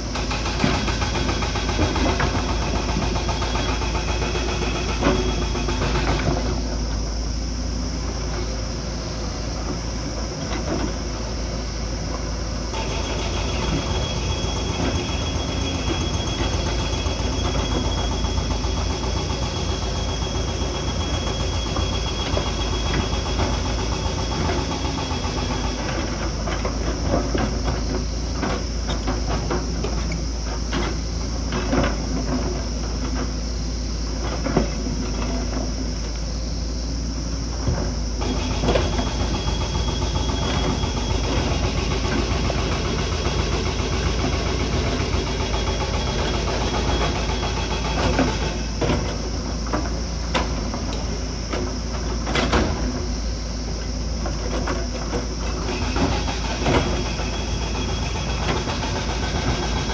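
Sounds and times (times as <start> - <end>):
diesel engine droning: 0.0 - 59.9.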